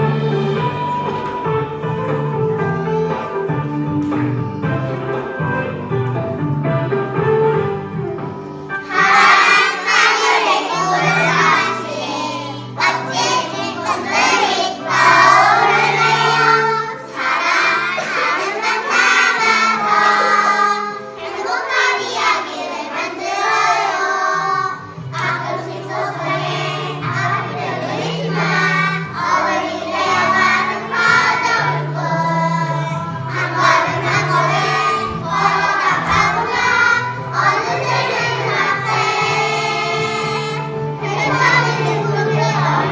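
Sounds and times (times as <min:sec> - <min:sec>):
instrumental accompaniment: 0:00.0 - 0:42.9
children singing in unison: 0:08.8 - 0:42.9.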